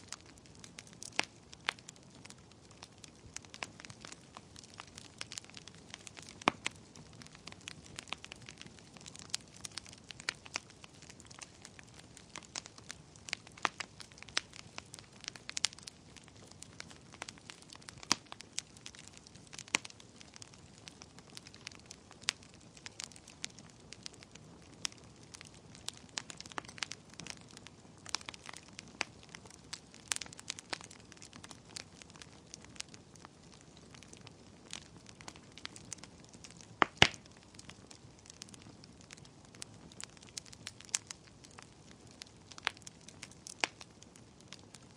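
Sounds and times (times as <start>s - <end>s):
wood fire crackling and popping: 0.0s - 44.9s.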